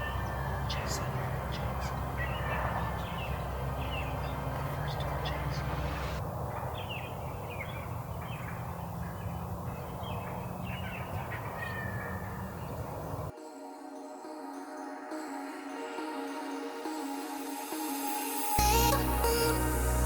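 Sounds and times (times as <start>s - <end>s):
wild birds chirping: 0.0s - 13.3s
music: 13.3s - 20.0s.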